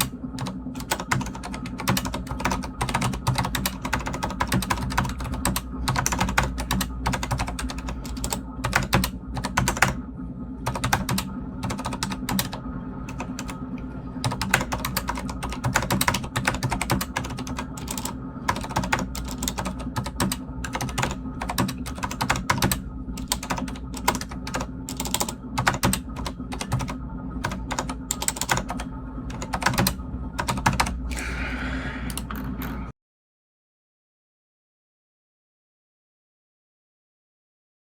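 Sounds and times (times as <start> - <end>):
mechanical keyboard typing: 0.0 - 10.0, 10.6 - 13.6, 14.2 - 31.0.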